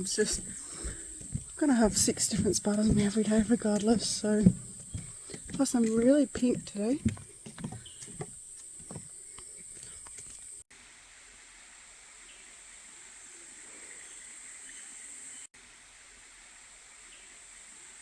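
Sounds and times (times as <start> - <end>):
soft knocks: 0.1 - 9.1.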